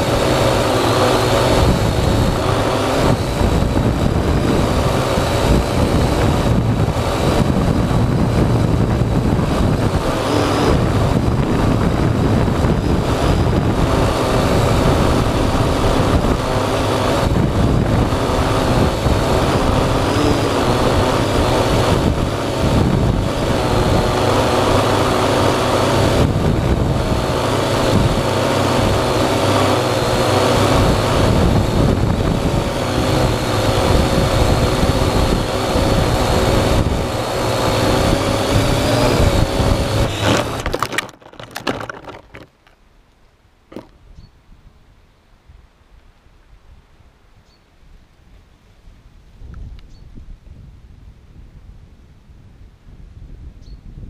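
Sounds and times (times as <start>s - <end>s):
drone propellers whirring: 0.0s - 42.4s.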